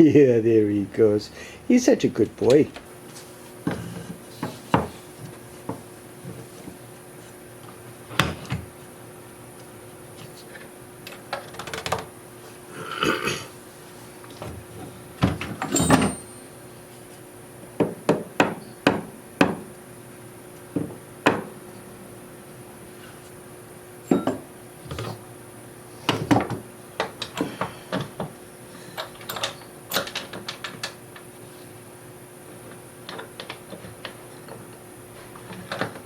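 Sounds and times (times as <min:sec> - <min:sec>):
faint steady hum: 0:00.0 - 0:36.0
wooden pieces knocking on bench: 0:04.4 - 0:05.0, 0:20.7 - 0:21.6.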